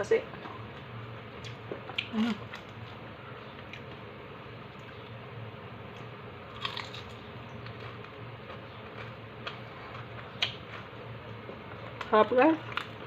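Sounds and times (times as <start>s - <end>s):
chewing crispy food: 5.9s - 13.0s.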